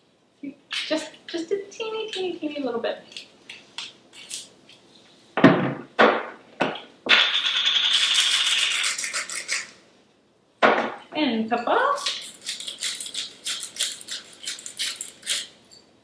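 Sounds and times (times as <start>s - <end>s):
kitchen items knocking: 5.4s - 8.8s
seasoning grinder clicking rattle: 12.0s - 15.6s.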